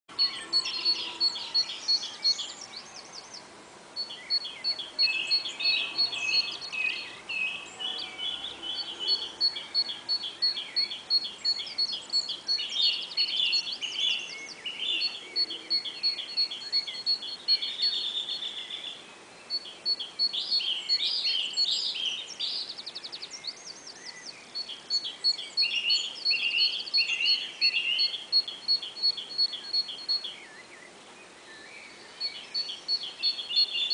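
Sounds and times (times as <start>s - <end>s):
songbird singing varied song: 0.1s - 33.9s.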